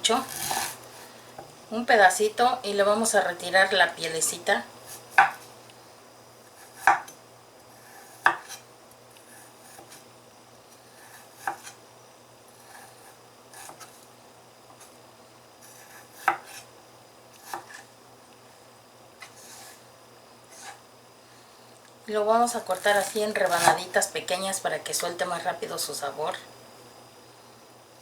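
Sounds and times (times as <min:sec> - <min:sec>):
knife scraping ginger skin: 0:00.2 - 0:00.8, 0:22.6 - 0:23.8.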